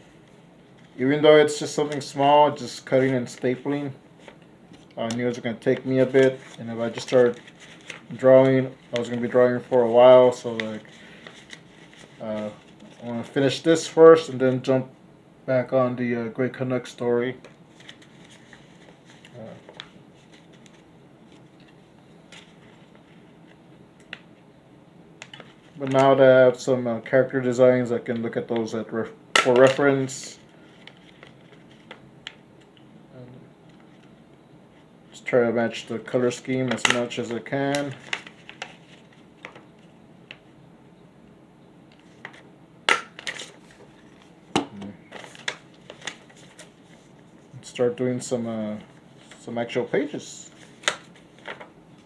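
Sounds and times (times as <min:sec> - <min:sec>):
paper rustling: 0:04.2 - 0:13.2, 0:17.7 - 0:21.5, 0:45.1 - 0:47.5.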